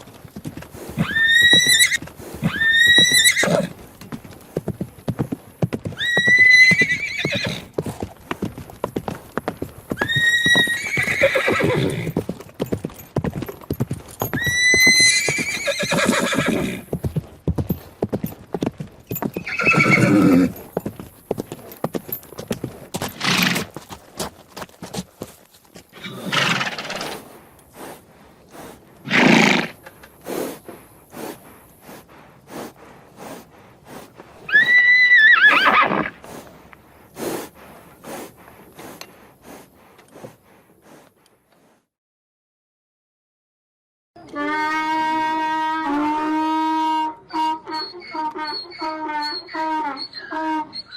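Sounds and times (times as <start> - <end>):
hooves clopping: 0.0 - 41.7
horses whinnying: 0.8 - 3.8, 5.8 - 7.8, 9.9 - 12.3, 14.2 - 17.0, 19.1 - 20.8, 23.1 - 23.8, 25.9 - 27.3, 29.0 - 30.0, 34.4 - 36.3, 47.3 - 50.9.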